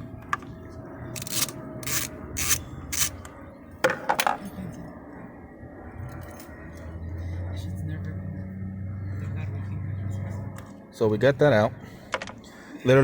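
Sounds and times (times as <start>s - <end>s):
ratchet wrench clicking: 1.2s - 3.1s.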